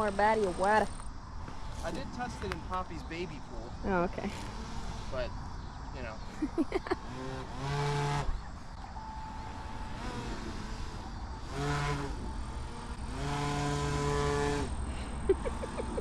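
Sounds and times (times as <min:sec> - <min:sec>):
model airboat motor humming: 0:07.0 - 0:08.4, 0:09.0 - 0:16.0.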